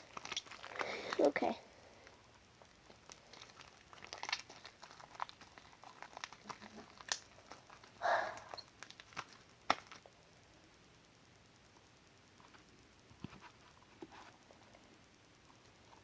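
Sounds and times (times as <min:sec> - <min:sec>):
slime popping and crackling: 0:00.0 - 0:01.6, 0:02.6 - 0:10.1.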